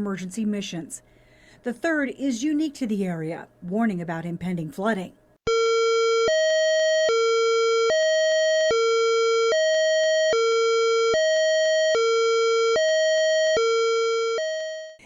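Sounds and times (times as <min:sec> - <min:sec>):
two-tone warning siren: 0:05.5 - 0:15.0.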